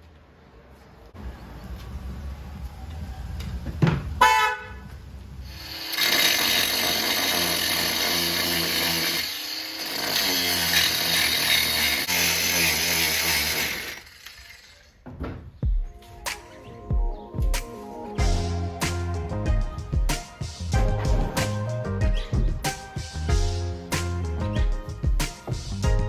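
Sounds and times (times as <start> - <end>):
power tool cutting fibreglass: 5.5 - 15.0.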